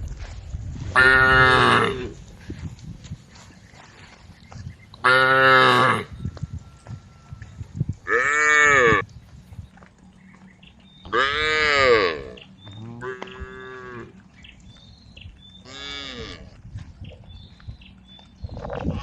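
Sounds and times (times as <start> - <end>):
cows mooing: 1.0 - 2.2, 5.0 - 6.2, 8.0 - 9.1, 10.6 - 14.3, 15.6 - 16.5.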